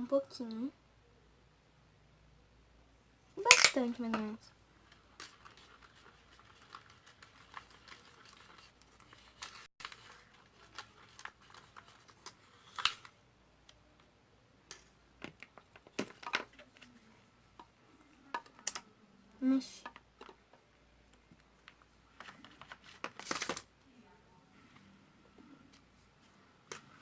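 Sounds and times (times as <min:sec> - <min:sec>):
plastic clicking and tapping: 0:18.3 - 0:18.9.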